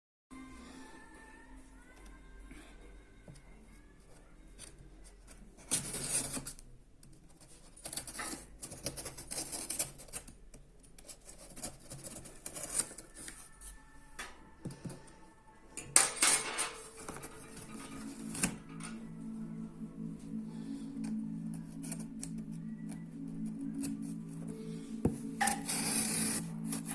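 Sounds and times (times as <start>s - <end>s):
faint music: 0.3s - 26.9s.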